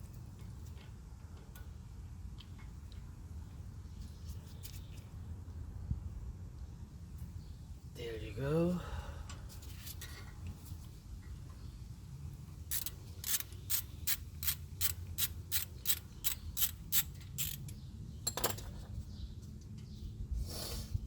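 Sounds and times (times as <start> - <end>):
hand ratchet clicking: 12.7 - 17.8.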